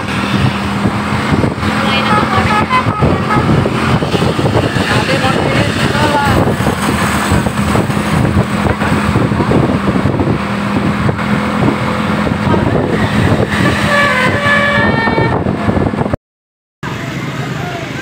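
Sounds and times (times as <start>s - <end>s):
dense vehicle noise: 0.0s - 16.2s, 16.8s - 18.0s
multi-tone bus air horn: 1.8s - 4.0s, 13.5s - 15.6s.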